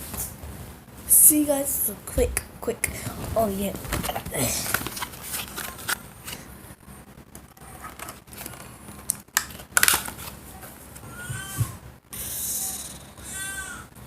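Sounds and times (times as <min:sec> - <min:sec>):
package rustling: 0:03.0 - 0:06.5, 0:07.8 - 0:10.4.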